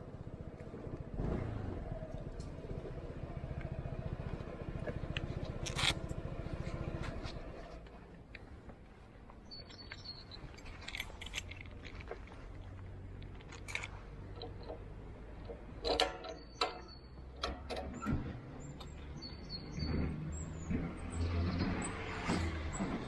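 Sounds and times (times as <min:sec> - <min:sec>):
scooter engine humming: 0:00.0 - 0:11.6.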